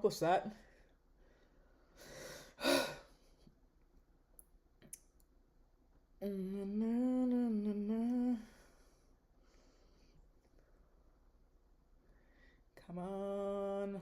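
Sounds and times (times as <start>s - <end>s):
woman humming: 6.2s - 8.6s.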